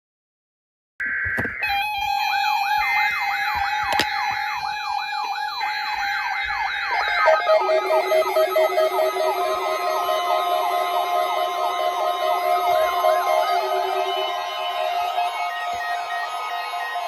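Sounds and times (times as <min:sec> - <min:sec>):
high alarm beeping tones: 0:01.0 - 0:17.0
low pulsing alarm tones: 0:01.6 - 0:17.0
yelping siren sweep: 0:04.8 - 0:17.0.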